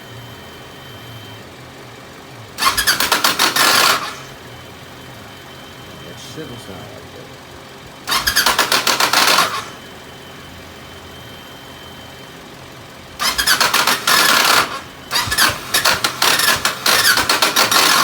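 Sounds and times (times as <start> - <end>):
motorcycle starter grinding: 2.6 - 4.7, 8.0 - 10.0, 13.1 - 18.0.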